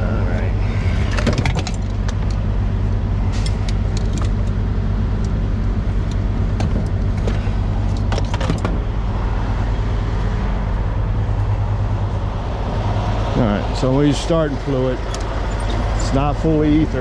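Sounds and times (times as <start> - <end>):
engine idling hum: 0.0 - 17.0
metallic clicks and rattles: 3.3 - 4.6.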